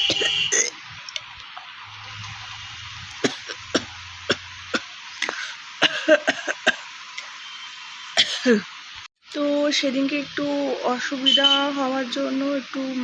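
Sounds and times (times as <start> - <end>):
steady hiss: 0.0 - 13.0
person coughing: 0.1 - 0.7, 3.2 - 4.4, 5.2 - 6.8, 8.2 - 8.7.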